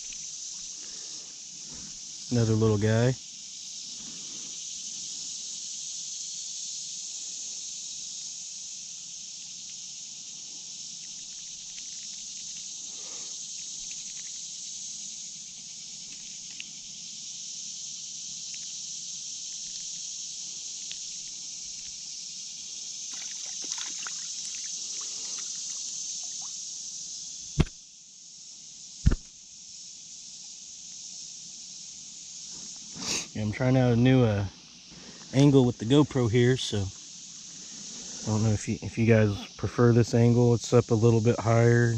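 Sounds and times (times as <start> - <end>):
creek water running: 23.1 - 26.6
sharp knock: 27.6 - 27.8, 29.0 - 29.3.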